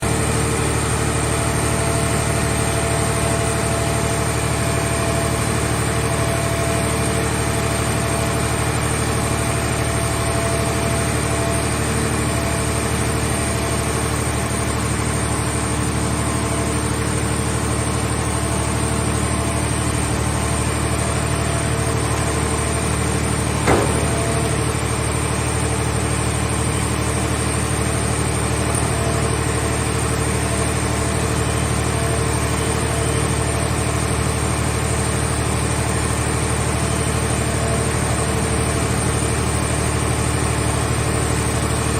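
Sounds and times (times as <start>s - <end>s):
hydraulic baler humming: 0.0s - 41.9s
sharp knock: 23.6s - 24.7s.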